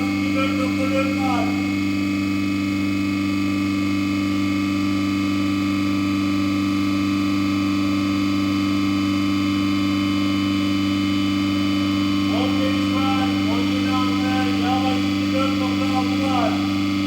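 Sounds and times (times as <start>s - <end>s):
refrigeration compressor humming: 0.0s - 17.0s.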